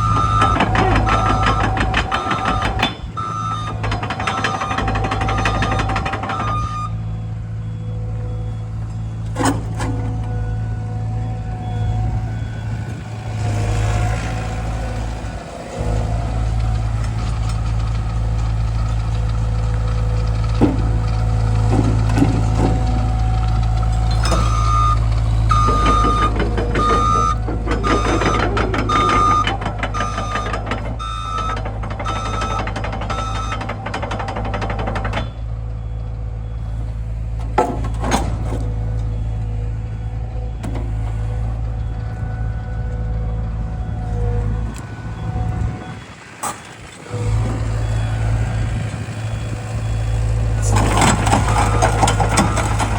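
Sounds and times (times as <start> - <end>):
travel alarm beeping: 0.0 - 13.1, 23.8 - 34.5, 43.6 - 46.8
excavator diesel engine running: 0.0 - 52.9.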